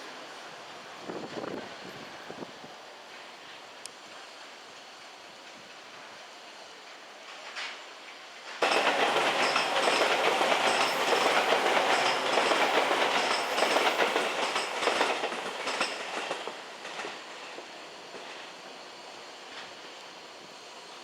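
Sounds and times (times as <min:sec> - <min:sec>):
train wheels clattering on rails: 0:07.3 - 0:20.0.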